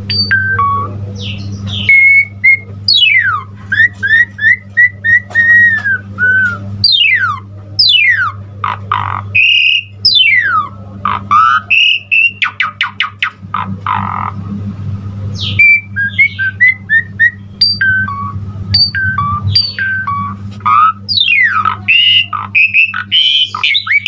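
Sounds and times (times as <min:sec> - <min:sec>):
steady low hum: 0:00.0 - 0:24.0
starling singing varied song: 0:06.8 - 0:14.4, 0:15.4 - 0:24.0.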